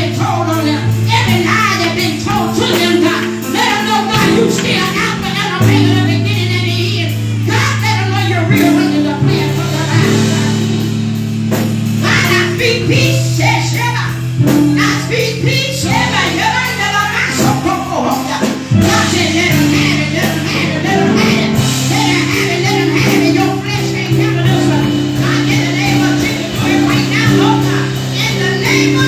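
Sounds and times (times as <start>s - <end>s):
held worship chords: 14.2s - 29.0s
person singing: 15.5s - 29.0s.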